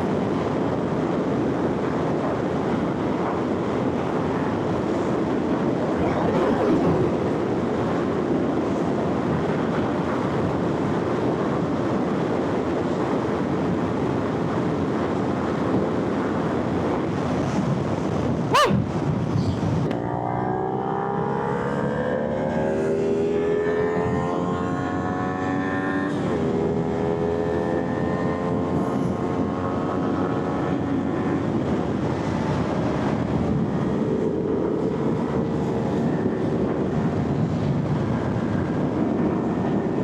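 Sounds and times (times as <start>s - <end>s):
wind rushing over microphone: 5.5s - 8.0s
motorcycle engine accelerating: 5.9s - 7.4s.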